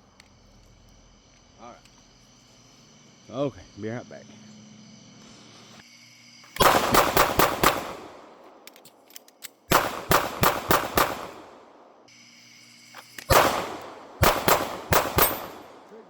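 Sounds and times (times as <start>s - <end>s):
pistol shots: 6.6s - 8.6s, 9.7s - 12.0s, 13.3s - 16.0s.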